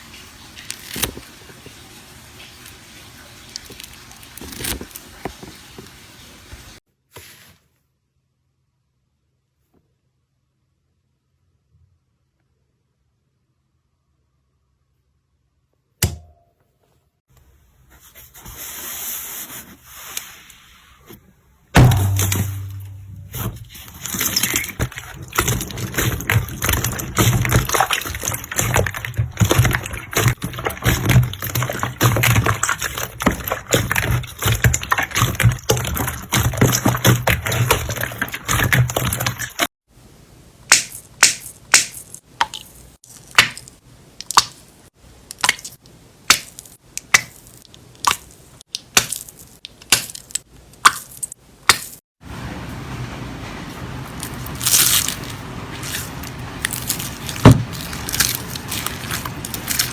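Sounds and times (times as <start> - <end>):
slime crackling and squishing: 0.6 - 6.0, 21.8 - 39.7, 53.8 - 59.9
low hum: 21.8 - 25.3
sharp pops and snaps: 40.7 - 44.6, 45.3 - 52.0.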